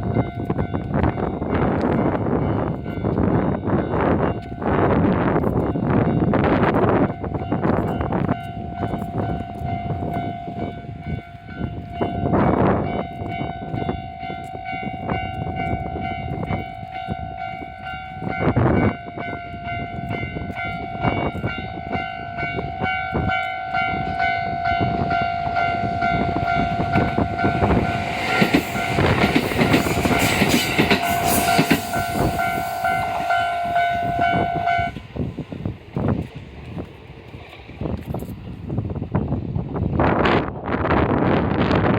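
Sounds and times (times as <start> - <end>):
train wheels rushing on rails: 0.0 - 41.9
level crossing alarm ringing: 13.1 - 35.0.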